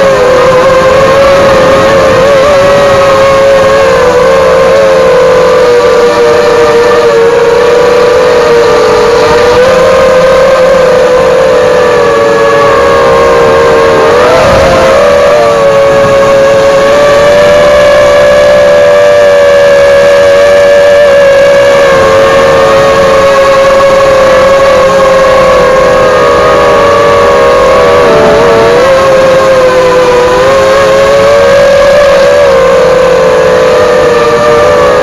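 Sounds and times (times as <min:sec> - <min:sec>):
quadcopter motors whining: 0:00.0 - 0:35.0.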